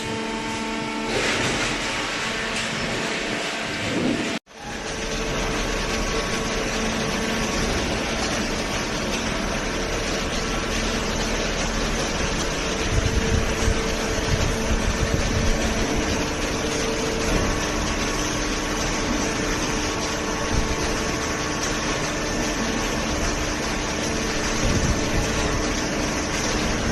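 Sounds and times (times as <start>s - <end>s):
hydraulic baler motor humming: 0.0s - 26.9s.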